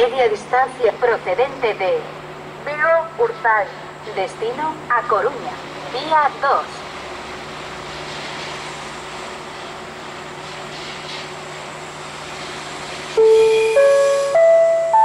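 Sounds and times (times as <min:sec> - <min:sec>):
public-address chime: 0:13.2 - 0:15.0.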